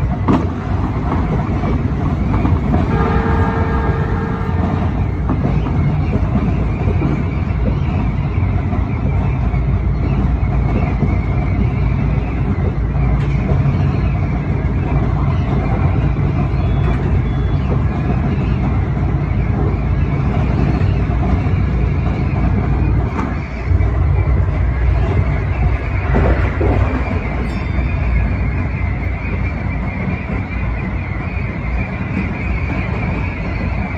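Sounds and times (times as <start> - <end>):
train rumbling on rails: 0.0 - 33.9.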